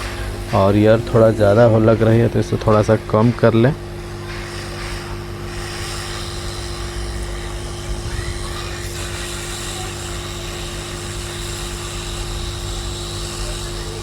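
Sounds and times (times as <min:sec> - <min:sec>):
constant hum: 0:00.0 - 0:14.0
hot air station blowing: 0:00.0 - 0:14.0.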